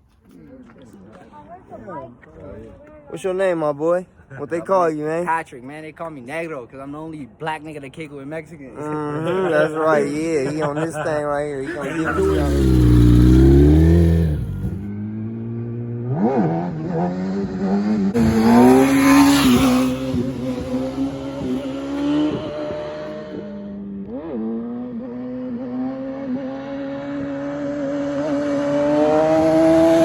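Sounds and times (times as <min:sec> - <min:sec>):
small off-road engine revving: 0:11.7 - 0:30.0.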